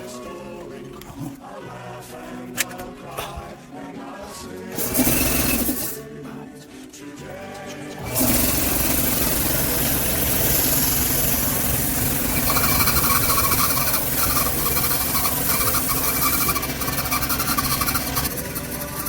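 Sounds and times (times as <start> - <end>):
air compressor motor hum: 4.8 - 6.0, 8.0 - 19.0
pulsing high tone: 8.1 - 19.0.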